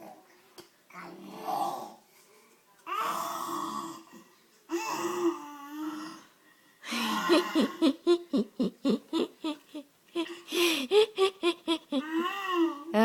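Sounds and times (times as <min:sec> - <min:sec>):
baby vocalizing: 0:12.0 - 0:12.9.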